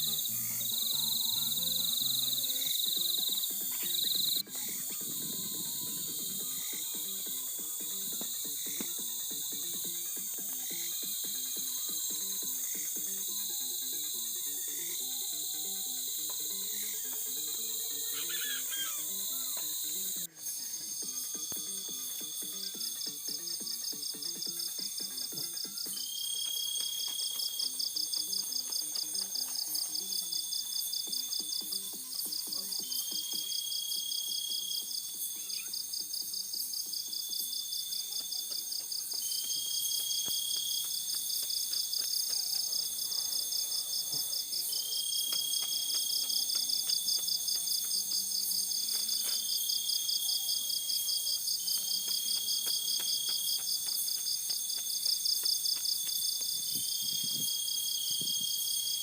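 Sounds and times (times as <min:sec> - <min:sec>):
short rising insect call: 0:00.0 - 0:23.0
insects trilling: 0:00.0 - 0:59.0.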